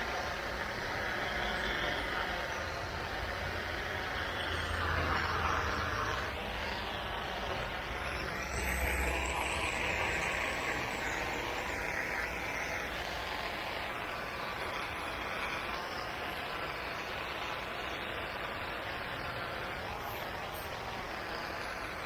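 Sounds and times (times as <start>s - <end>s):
spray hissing onto concrete: 0.0s - 22.0s.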